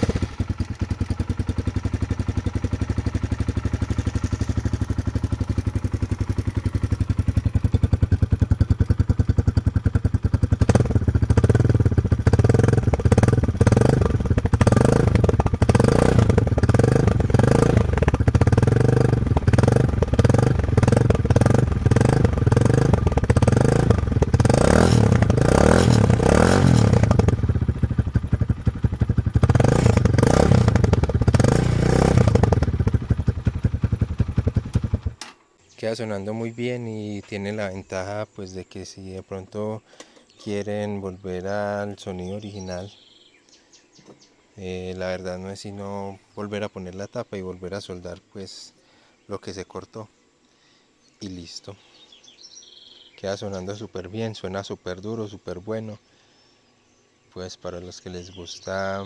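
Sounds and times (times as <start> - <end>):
motorcycle engine idling and revving: 0.0 - 35.3.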